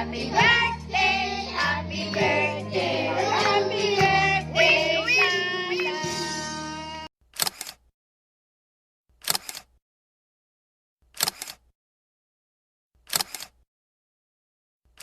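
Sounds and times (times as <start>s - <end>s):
music: 0.0s - 7.1s
camera shutter double click: 7.4s - 7.8s, 9.2s - 9.7s, 11.2s - 11.6s, 13.1s - 13.6s.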